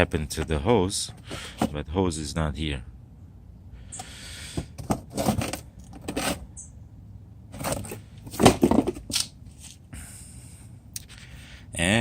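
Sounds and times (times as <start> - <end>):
cardboard packaging rustling: 7.6 - 9.2.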